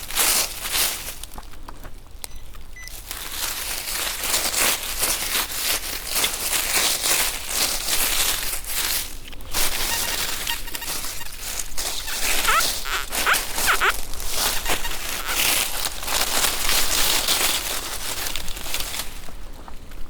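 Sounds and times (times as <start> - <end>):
dry leaf litter crackling: 0.0 - 1.6, 2.9 - 20.0
faint short beeps: 9.7 - 15.6.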